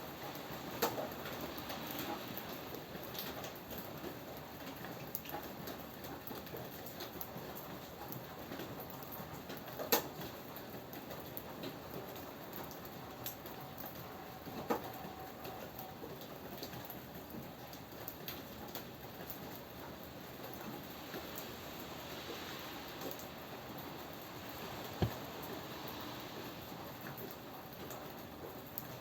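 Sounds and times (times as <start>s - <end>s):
steady rain: 0.0s - 29.0s.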